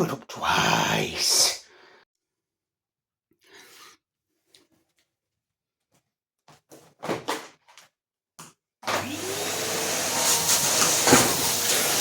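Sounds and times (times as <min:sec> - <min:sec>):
vacuum cleaner motor whine: 0:08.9 - 0:12.0.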